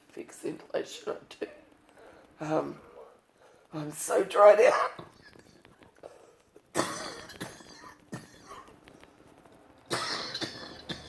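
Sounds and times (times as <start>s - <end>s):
woman coughing: 6.8s - 8.7s, 9.9s - 11.0s.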